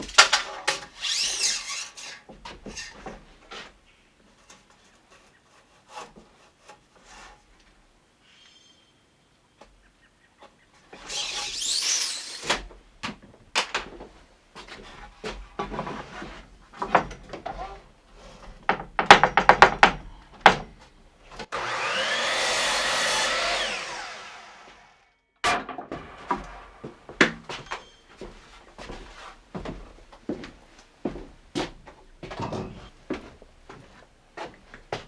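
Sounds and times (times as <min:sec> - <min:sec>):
wooden knocks and clatters: 0:18.5 - 0:20.8, 0:25.4 - 0:27.9
power tool running: 0:21.4 - 0:25.1, 0:26.0 - 0:26.9.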